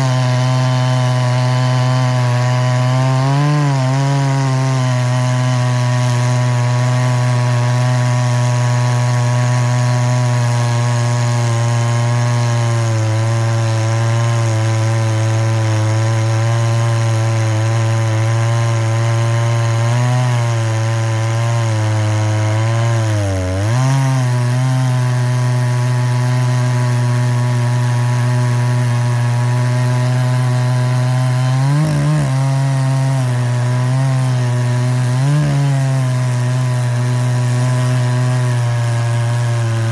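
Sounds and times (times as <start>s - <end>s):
rotary tool grinding metal: 0.0s - 12.9s, 24.0s - 39.9s.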